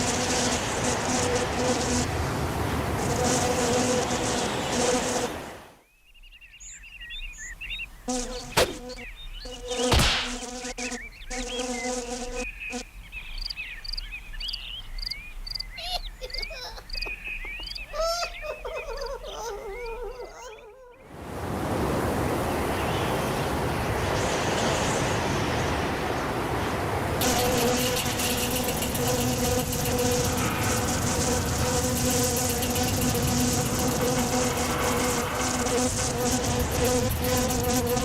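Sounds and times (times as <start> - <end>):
insect buzzing: 0.0 - 5.6, 8.1 - 12.8, 27.1 - 38.0.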